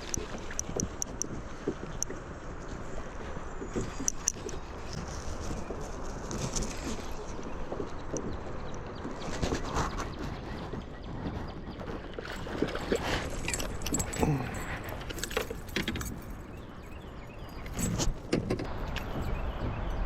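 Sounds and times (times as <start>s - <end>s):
fishing lure jingling and clinking: 12.8s - 16.7s.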